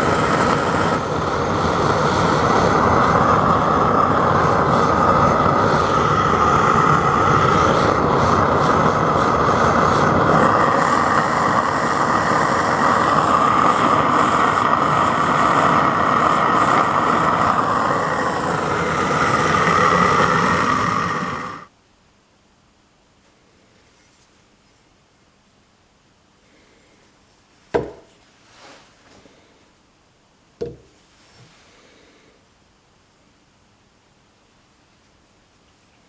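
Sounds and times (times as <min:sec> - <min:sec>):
forge burner rushing: 0:00.0 - 0:21.7.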